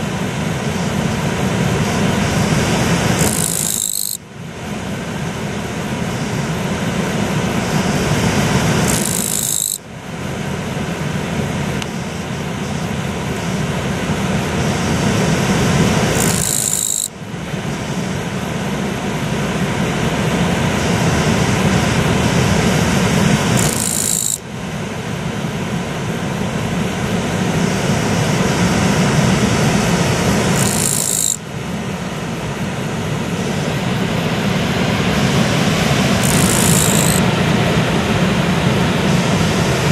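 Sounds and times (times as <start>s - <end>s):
high harsh insect buzz: 2.5s - 4.8s, 7.8s - 10.0s, 16.0s - 17.2s, 23.5s - 24.5s, 30.5s - 31.5s, 36.1s - 37.2s.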